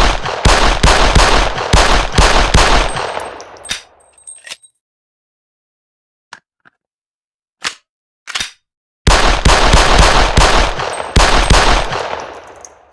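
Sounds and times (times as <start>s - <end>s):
rapid gunfire with echo: 0.0s - 3.4s, 9.1s - 12.6s
pistol shots: 0.0s - 4.0s, 9.1s - 12.6s.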